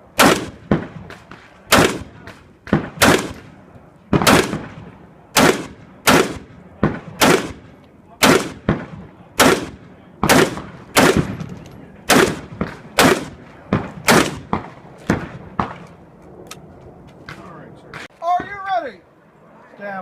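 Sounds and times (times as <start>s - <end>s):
pistol shots: 0.2s - 15.9s.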